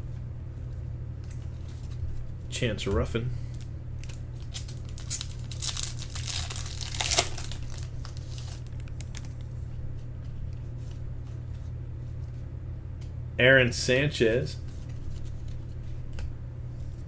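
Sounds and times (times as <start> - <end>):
steady low hum: 0.0 - 17.0
foil card pack crinkling: 3.5 - 9.5.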